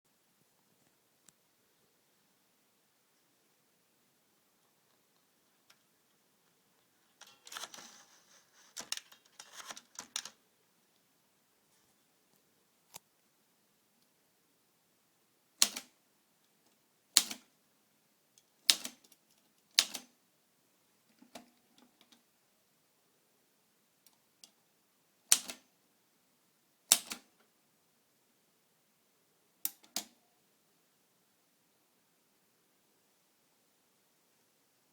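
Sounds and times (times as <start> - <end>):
typewriter clicking and rattling: 7.2 - 8.0, 8.6 - 10.4, 15.6 - 15.9, 17.2 - 17.5, 18.6 - 19.2, 19.8 - 20.1, 25.3 - 25.6.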